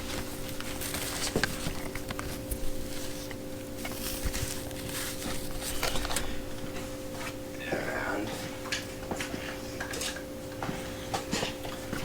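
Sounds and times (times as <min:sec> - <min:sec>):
packaging rustling: 0:00.0 - 0:06.7
faint steady hum: 0:00.0 - 0:12.0.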